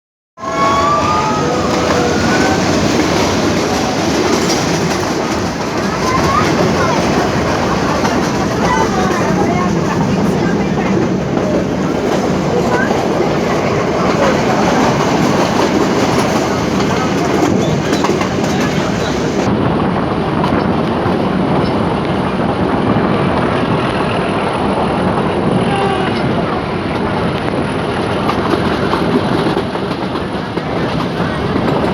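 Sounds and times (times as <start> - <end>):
toy train rumbling on rails: 0.5 - 19.5.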